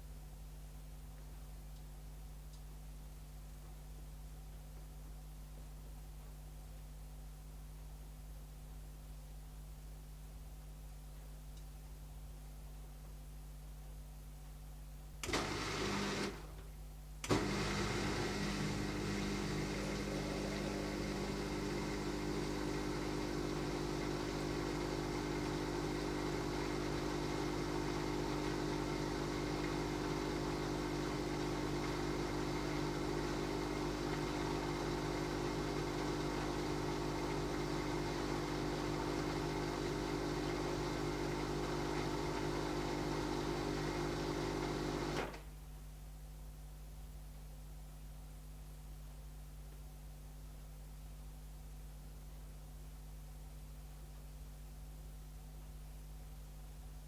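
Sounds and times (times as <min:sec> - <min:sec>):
dishwasher motor hum: 0:15.2 - 0:45.3.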